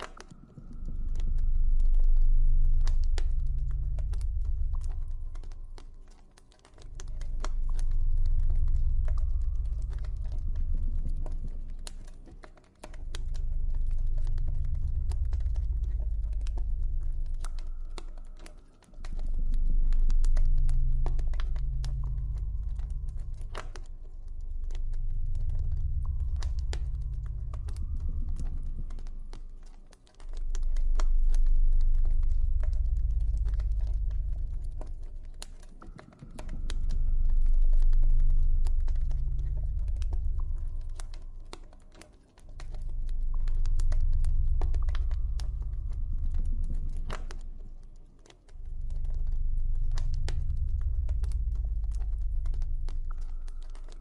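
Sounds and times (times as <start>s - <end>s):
campfire crackling and popping: 0.0s - 54.0s
deep droning tone: 0.0s - 54.0s.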